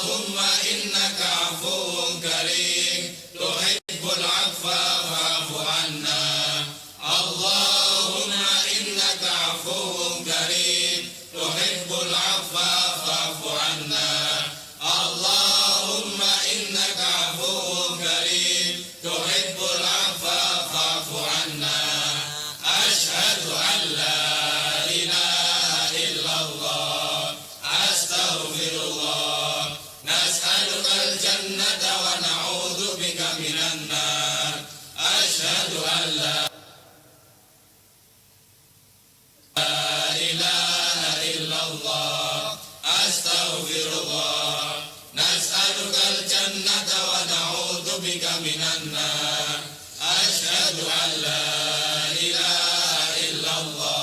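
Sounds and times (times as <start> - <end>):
person chanting a prayer: 0.0 - 36.8, 39.6 - 54.0.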